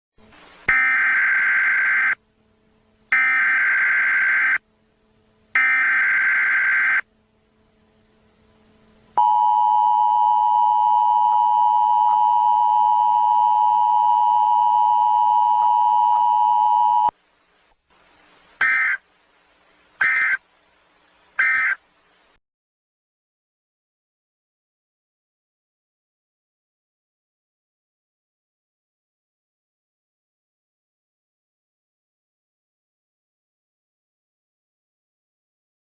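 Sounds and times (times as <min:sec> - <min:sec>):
harsh buzzing data bursts: 0:00.6 - 0:02.2, 0:03.1 - 0:04.6, 0:05.5 - 0:07.1, 0:18.6 - 0:19.0, 0:20.0 - 0:20.5, 0:21.4 - 0:21.8
steady warning alarm tone: 0:00.7 - 0:02.2, 0:03.1 - 0:04.6, 0:05.5 - 0:07.1, 0:09.2 - 0:17.1.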